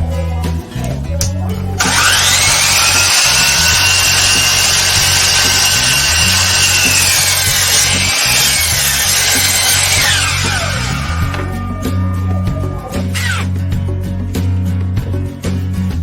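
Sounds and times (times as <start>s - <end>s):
electric saw cutting wood: 1.8s - 11.7s, 12.8s - 13.5s.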